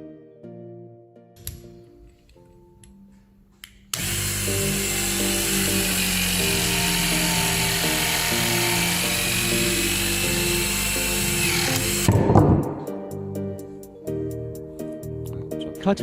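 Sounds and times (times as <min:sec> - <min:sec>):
background music: 0:00.0 - 0:16.0
hydraulic cable cutter whining: 0:03.9 - 0:12.3.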